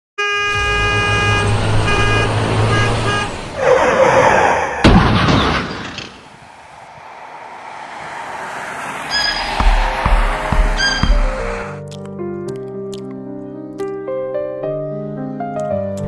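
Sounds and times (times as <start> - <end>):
horn-like blaring tone: 0.2 - 3.4
sharp bang: 0.5 - 3.0, 9.1 - 11.6
rushing swell: 6.2 - 11.8
low rumble: 6.4 - 11.6.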